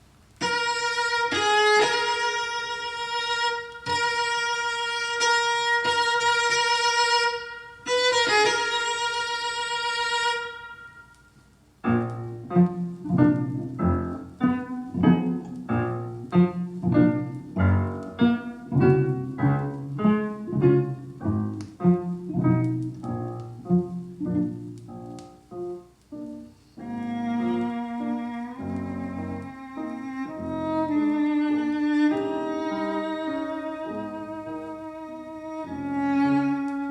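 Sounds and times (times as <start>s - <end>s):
violin playing: 0.4s - 11.3s, 26.8s - 36.9s.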